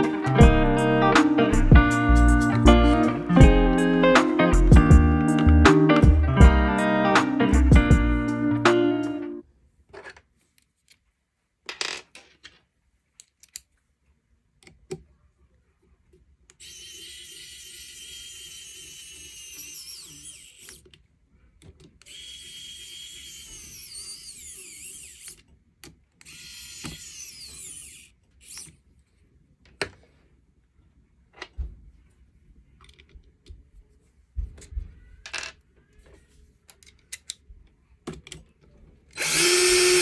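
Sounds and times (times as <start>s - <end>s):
power drill motor whine: 16.6s - 20.8s, 22.1s - 25.4s, 26.2s - 28.7s, 39.2s - 40.0s.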